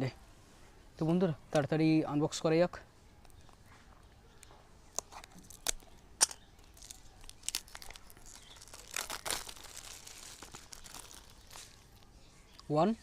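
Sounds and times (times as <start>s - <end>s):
packaging clicks: 4.9s - 12.1s
wrap crinkling and tearing: 5.0s - 12.1s.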